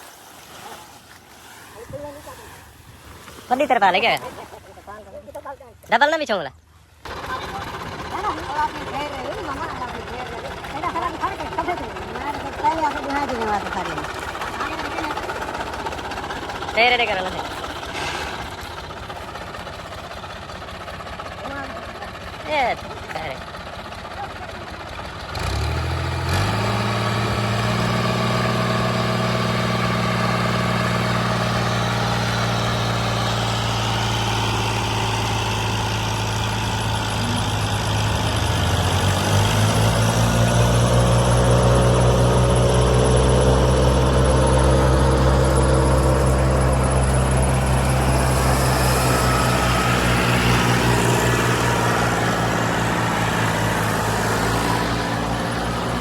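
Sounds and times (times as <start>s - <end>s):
combine harvester diesel engine: 3.6s - 56.0s.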